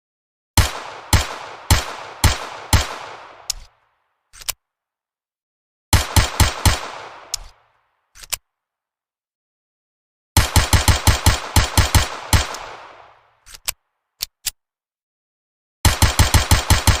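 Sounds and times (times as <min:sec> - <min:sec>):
handgun shots: 0:00.6 - 0:03.8, 0:05.9 - 0:07.6, 0:10.4 - 0:13.7
gun clicks: 0:00.6 - 0:04.6, 0:06.0 - 0:08.6, 0:10.4 - 0:14.6.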